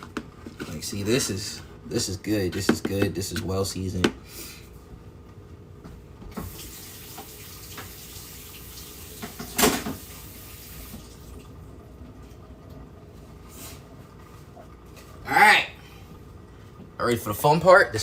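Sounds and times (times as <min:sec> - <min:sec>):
tap running into sink: 0:06.3 - 0:08.1, 0:09.2 - 0:10.2.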